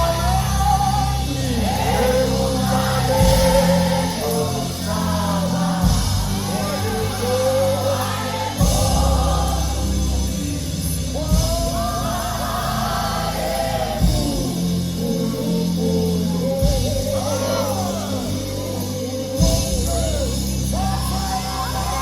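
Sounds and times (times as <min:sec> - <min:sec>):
gospel singing voices: 0:00.0 - 0:22.0
steady bass line: 0:00.0 - 0:22.0
drum hits: 0:05.8 - 0:06.6.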